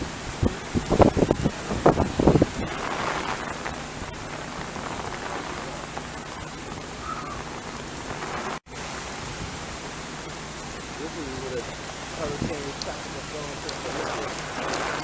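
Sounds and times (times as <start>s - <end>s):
heavy rain hissing: 0.0s - 15.0s.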